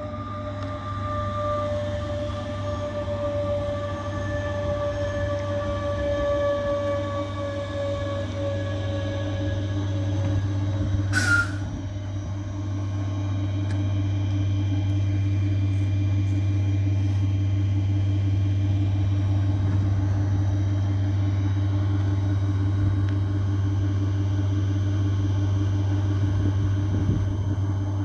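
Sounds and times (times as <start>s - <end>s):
train equipment humming: 0.0s - 28.0s
brief squeal: 11.1s - 11.8s.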